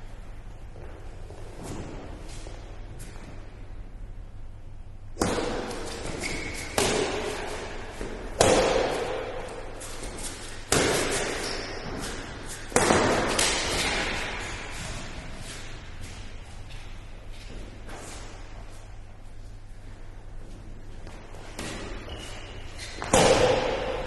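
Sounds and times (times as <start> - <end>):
racket striking shuttlecock: 5.2 - 15.1, 22.8 - 24.0
shoe squeaks: 5.9 - 6.8, 11.2 - 12.3, 21.6 - 23.2.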